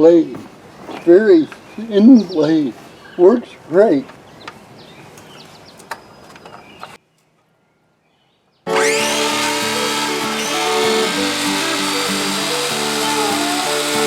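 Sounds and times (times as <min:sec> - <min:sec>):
faint background noise: 0:00.0 - 0:08.7.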